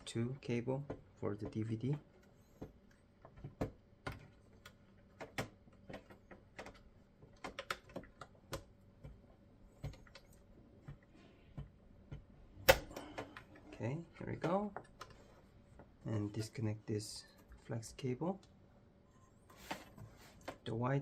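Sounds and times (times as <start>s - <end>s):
plastic parts clicking and tapping: 0.8s - 9.2s, 9.8s - 13.6s.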